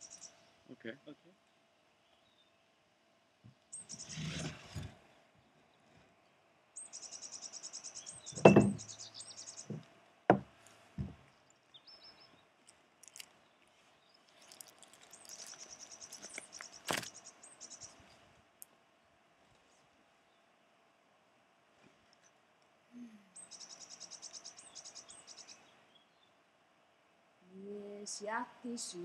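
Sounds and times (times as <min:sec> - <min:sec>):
sharp knocks: 0:08.4 - 0:08.9, 0:09.7 - 0:11.2.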